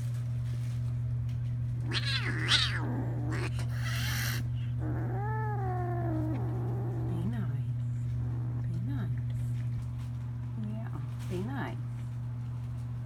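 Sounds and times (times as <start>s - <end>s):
steady low hum: 0.0s - 13.0s
cat meowing: 1.9s - 6.5s.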